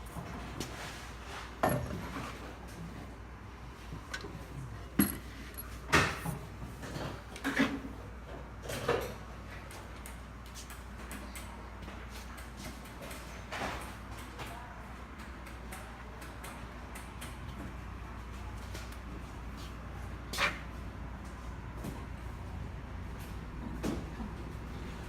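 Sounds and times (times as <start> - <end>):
hard objects knocking: 5.0 - 6.3.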